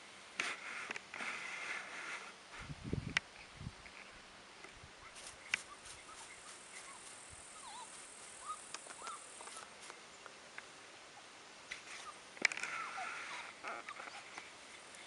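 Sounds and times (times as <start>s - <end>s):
puppy whimpering: 7.6s - 9.2s.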